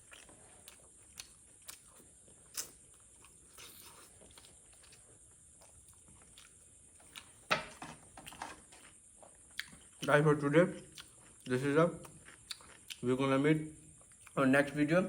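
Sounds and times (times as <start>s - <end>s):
chewing and biting chicken: 0.0s - 7.4s, 10.8s - 13.1s
crunch of biting: 0.0s - 7.5s, 10.7s - 13.1s.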